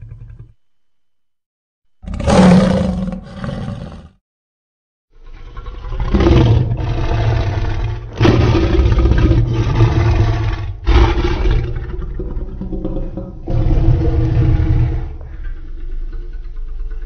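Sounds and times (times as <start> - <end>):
creature roars: 2.0 - 4.2, 13.4 - 15.5.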